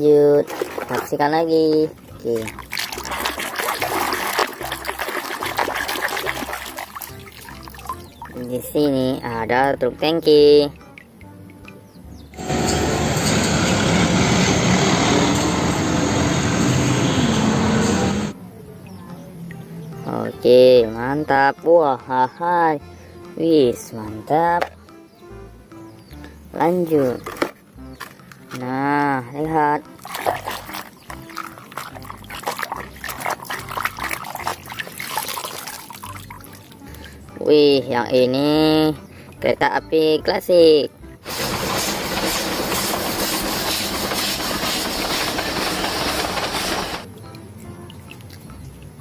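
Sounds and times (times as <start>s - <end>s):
water splashing and trickling: 0.0s - 12.6s, 26.2s - 49.0s
low motor hum: 12.2s - 18.4s, 41.3s - 47.1s.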